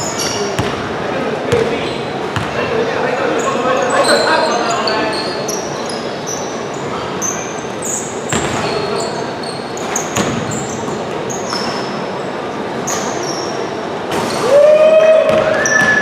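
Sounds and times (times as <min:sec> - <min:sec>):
sneakers squeaking on court: 0:00.0 - 0:02.6, 0:03.4 - 0:14.4, 0:15.3 - 0:16.0
noise of the hall: 0:00.0 - 0:16.0
basketball bouncing: 0:00.6 - 0:00.9, 0:02.3 - 0:02.6, 0:08.3 - 0:08.6, 0:10.2 - 0:10.5, 0:15.3 - 0:16.0.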